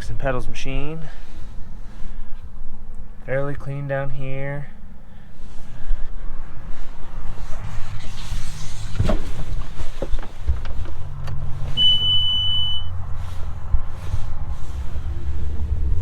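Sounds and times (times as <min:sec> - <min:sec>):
low steady rumble: 0:00.0 - 0:16.0
steady electronic beep: 0:11.8 - 0:13.0.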